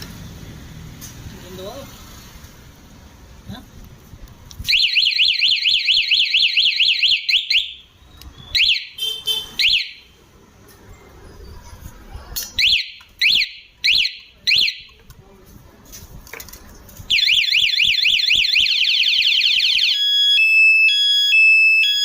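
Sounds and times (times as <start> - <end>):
bike alarm siren: 4.7 - 7.9, 8.5 - 9.0, 9.6 - 10.1, 12.6 - 14.9, 17.1 - 22.0.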